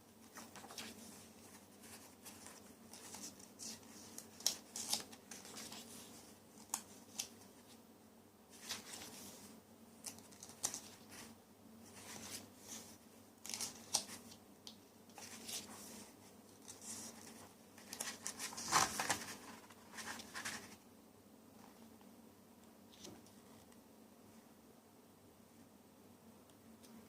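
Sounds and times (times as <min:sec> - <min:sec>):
paper and packaging rustling: 0:15.2 - 0:20.8.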